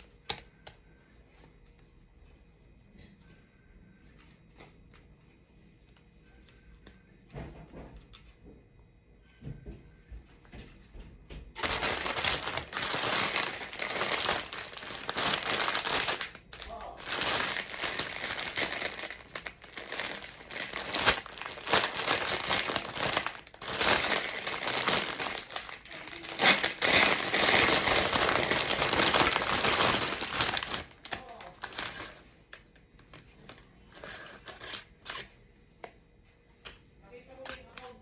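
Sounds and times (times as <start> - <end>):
packaging crinkling and rustling: 11.5 - 35.3.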